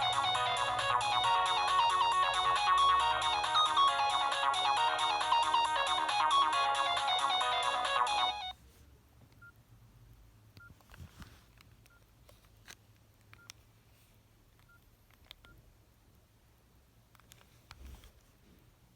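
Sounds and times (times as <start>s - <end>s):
phone ringtone melody: 0.0s - 8.6s.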